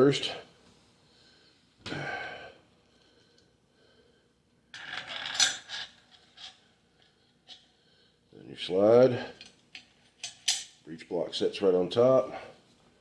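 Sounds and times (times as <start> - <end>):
metal parts scraping and clinking: 4.8 - 6.7, 9.4 - 10.7.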